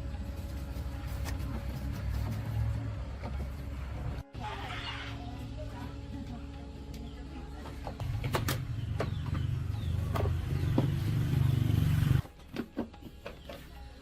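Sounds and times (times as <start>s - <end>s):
motorcycle engine rumbling: 6.5s - 12.2s.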